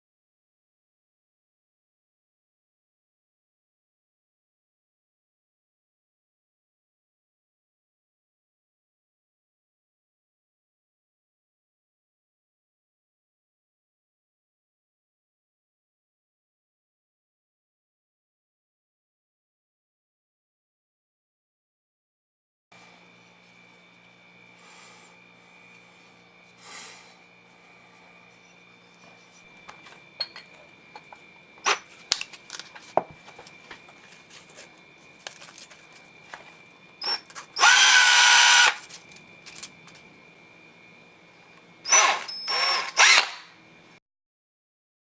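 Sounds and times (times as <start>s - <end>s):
clicks and knocks of tools: 29.6s - 36.6s
power drill spinning: 37.0s - 39.0s, 41.9s - 43.5s.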